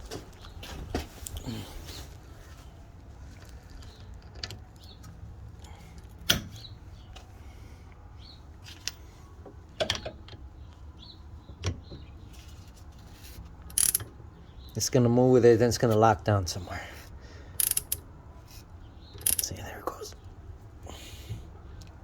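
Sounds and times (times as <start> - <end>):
hand tools clicking on bolts: 13.7 - 14.1, 17.6 - 18.0, 19.2 - 19.5.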